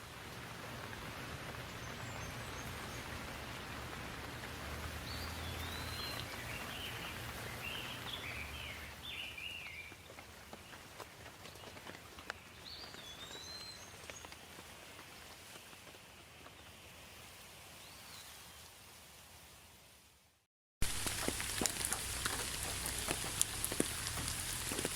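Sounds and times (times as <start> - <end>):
rain hiss: 0.0 - 24.9
water drips ticking: 0.7 - 13.0, 20.8 - 24.9
birds chirping: 1.5 - 14.5, 21.1 - 24.9.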